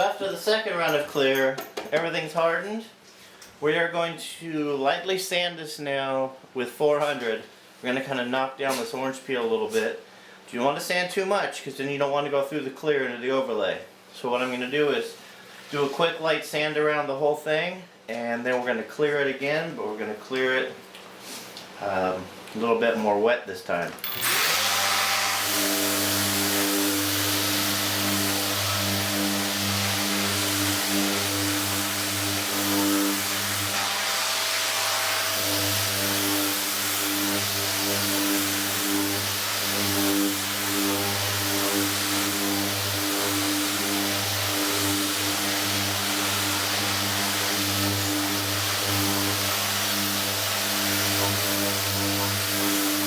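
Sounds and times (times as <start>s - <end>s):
power sander running: 24.0s - 53.0s.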